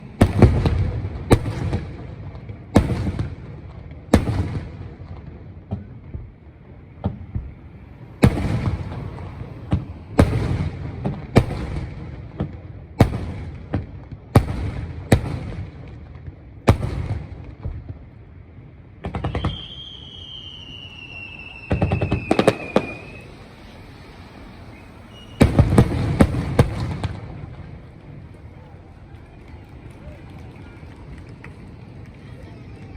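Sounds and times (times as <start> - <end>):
fireworks bursting with rumble: 0.0 - 32.9
rapid fireworks crackling: 0.0 - 32.9
high falling whistle: 19.3 - 25.9.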